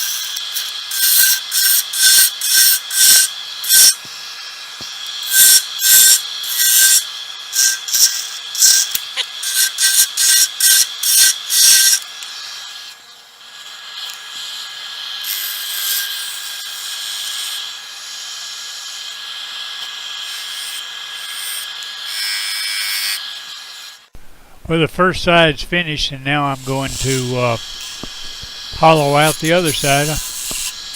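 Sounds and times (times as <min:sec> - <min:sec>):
turning tool scraping wood: 0:26.3 - 0:30.9
lathe whine: 0:26.5 - 0:30.9.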